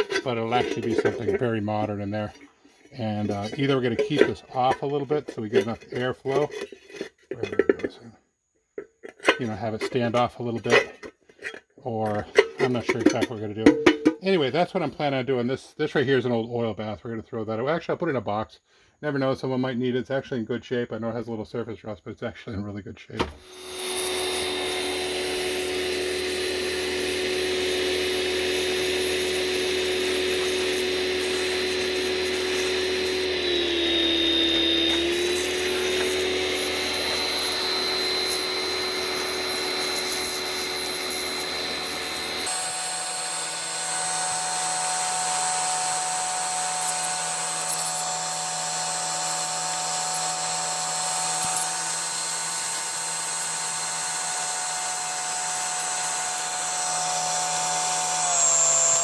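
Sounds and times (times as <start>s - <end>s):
higher-pitched tool whine: 23.2s - 59.0s
power tool whining: 23.2s - 59.0s.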